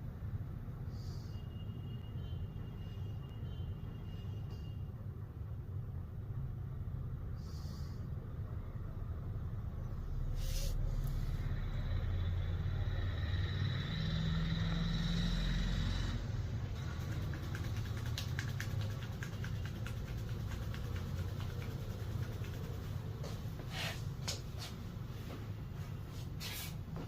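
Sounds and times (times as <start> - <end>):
hands rubbing skin: 17.1 - 24.0.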